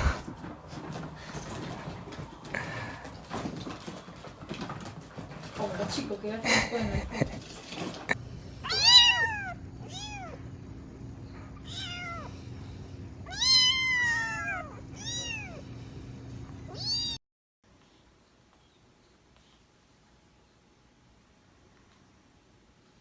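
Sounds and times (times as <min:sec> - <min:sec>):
cat meowing: 0:08.6 - 0:10.5, 0:11.6 - 0:12.4, 0:13.2 - 0:15.7, 0:16.7 - 0:17.2.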